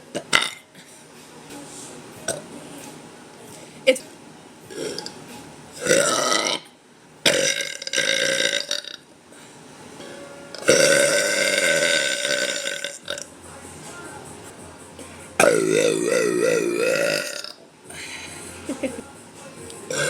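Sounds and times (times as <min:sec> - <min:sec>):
woman burping loudly: 0:00.1 - 0:00.7, 0:04.7 - 0:05.1, 0:05.8 - 0:06.7, 0:07.3 - 0:09.0, 0:10.6 - 0:13.2, 0:15.4 - 0:17.6.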